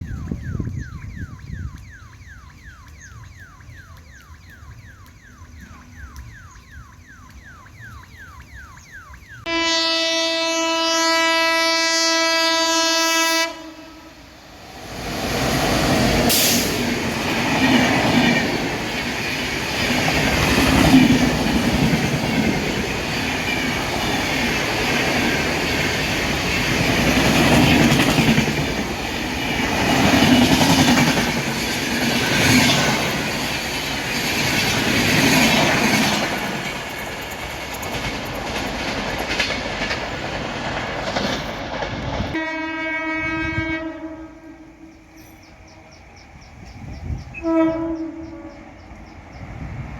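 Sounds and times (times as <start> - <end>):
faint chirping: 0.0 - 9.5, 44.8 - 49.9
locomotive horn blast: 9.4 - 14.4, 42.4 - 45.3, 47.3 - 48.8
train wheels rumbling on rails: 14.5 - 42.5, 44.8 - 49.9.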